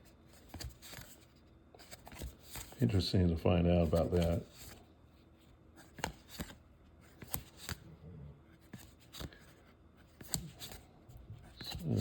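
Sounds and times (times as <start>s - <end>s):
cards snapping and sliding: 5.8s - 7.8s, 8.6s - 9.5s, 10.1s - 10.8s.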